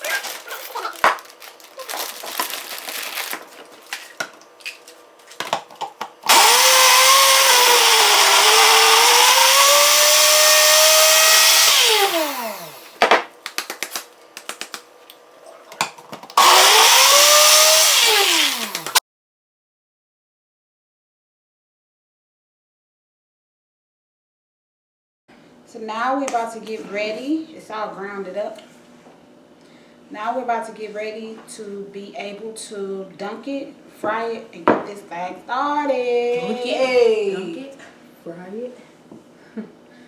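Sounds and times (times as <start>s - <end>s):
blender grinding: 6.2s - 13.0s, 16.3s - 19.0s
blender motor winding down: 6.3s - 13.0s, 16.4s - 19.0s.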